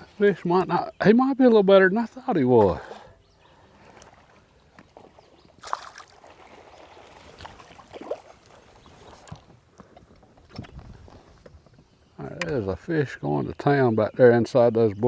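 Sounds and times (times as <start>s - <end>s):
water splashing: 2.6s - 9.5s.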